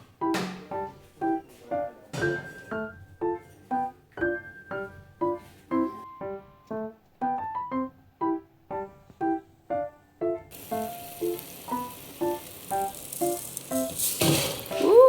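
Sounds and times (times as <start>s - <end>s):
soft keyboard notes: 0.0s - 11.0s
steady hiss: 10.5s - 15.0s.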